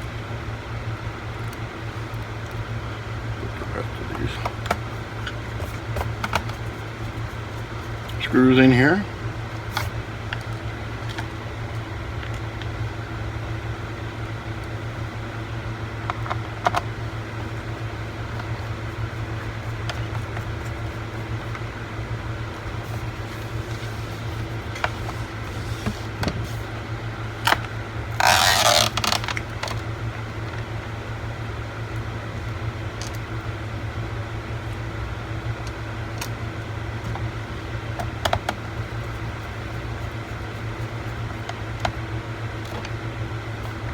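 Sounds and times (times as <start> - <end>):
steady low hum: 0.0 - 43.9
rustling noise: 22.7 - 26.7.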